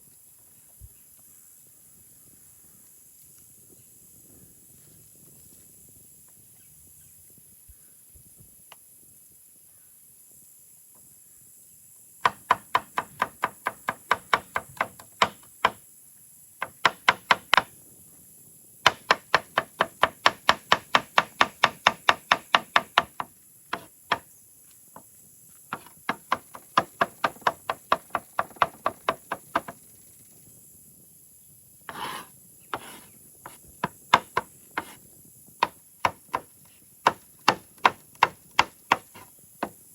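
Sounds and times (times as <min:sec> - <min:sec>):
knife chopping on cutting board: 0:31.9 - 0:35.0, 0:37.1 - 0:39.3.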